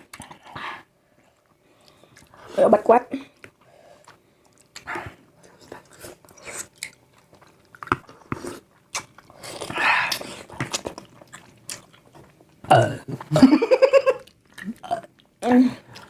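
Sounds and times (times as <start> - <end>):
person chewing crunchy fruit: 3.4 - 13.4, 14.1 - 16.0.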